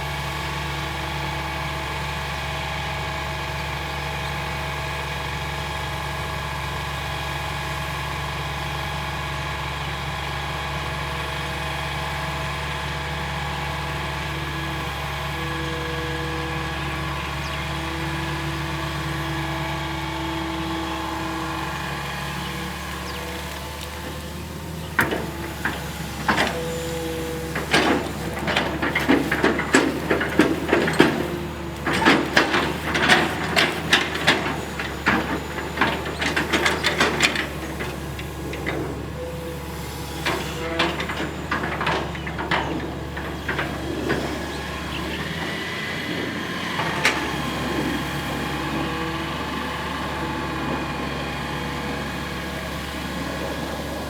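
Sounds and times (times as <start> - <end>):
excavator diesel engine running: 0.0 - 54.0
clanks and knocks: 20.8 - 39.2, 40.2 - 49.2.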